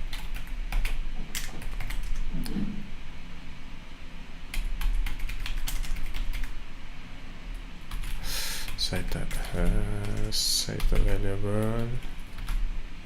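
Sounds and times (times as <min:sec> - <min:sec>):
keyboard keys clicking: 0:04.6 - 0:06.5.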